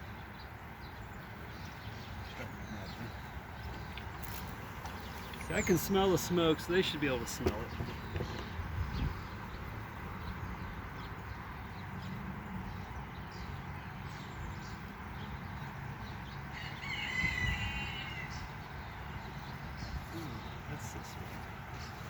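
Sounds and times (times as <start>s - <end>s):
rooster crowing: 16.5s - 18.5s.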